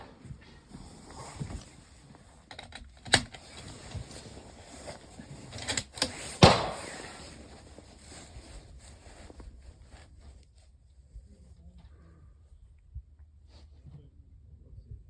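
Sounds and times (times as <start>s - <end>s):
rifle bolt clicks and clacks: 2.5s - 3.7s, 5.5s - 6.9s
gunshot crack: 6.4s - 7.2s.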